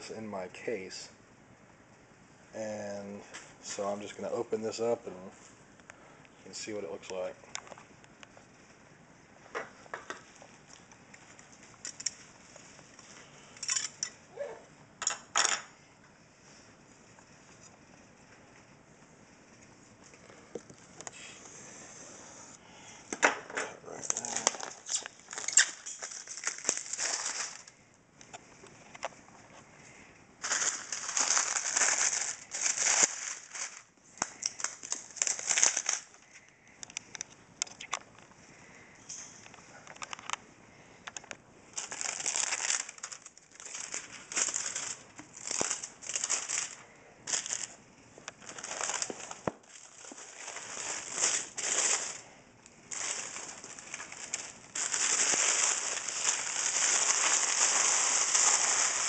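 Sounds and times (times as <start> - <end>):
packaging crinkling and tearing: 23.9 - 27.8, 30.4 - 38.2, 41.1 - 59.0
clicks and rustles: 39.1 - 40.4.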